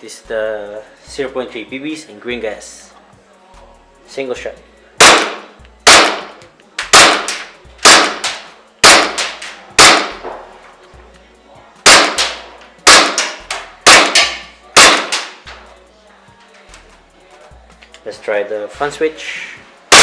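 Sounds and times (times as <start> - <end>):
airsoft pistol shots: 5.0 - 10.2, 11.8 - 15.4.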